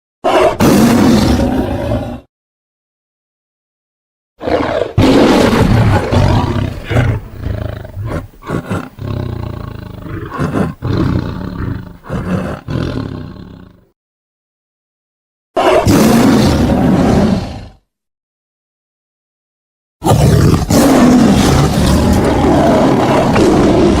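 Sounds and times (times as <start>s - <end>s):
tiger roaring: 0.2s - 2.3s, 4.4s - 13.9s, 15.6s - 17.8s, 20.0s - 24.0s.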